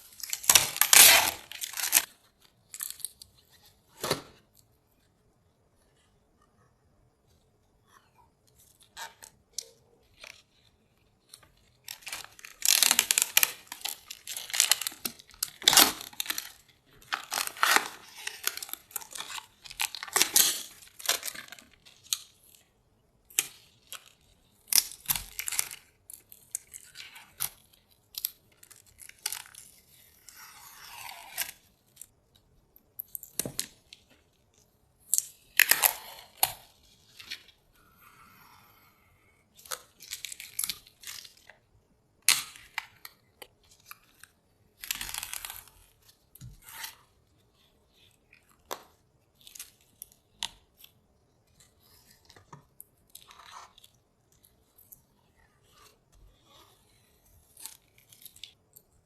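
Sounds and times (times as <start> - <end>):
packaging being torn: 0.1 - 2.2, 11.9 - 22.3.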